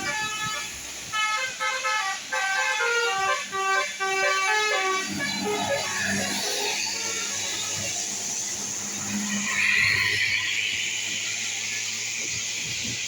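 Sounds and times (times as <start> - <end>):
musical bus air horn: 0.0 - 6.4
rough noisy rumble: 0.0 - 13.0.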